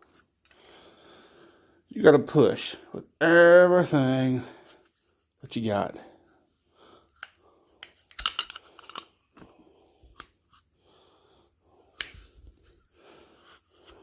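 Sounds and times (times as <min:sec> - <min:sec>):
small metal clicks and scrapes: 0:07.2 - 0:09.2.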